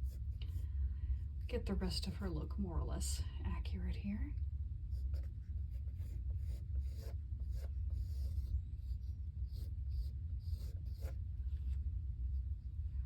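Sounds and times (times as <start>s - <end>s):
steady low hum: 0.0s - 13.0s
pencil scratching on paper: 4.9s - 11.8s.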